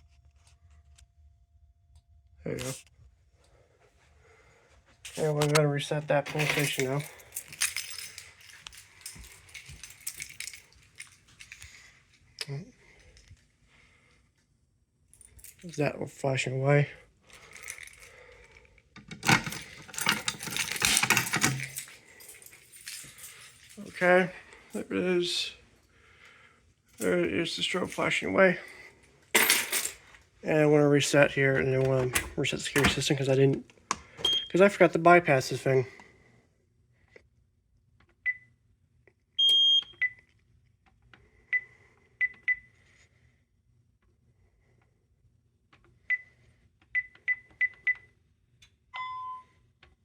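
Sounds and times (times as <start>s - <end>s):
small metal objects clinking: 6.3s - 11.9s, 19.2s - 24.0s
keypad beeping: 49.0s - 49.4s.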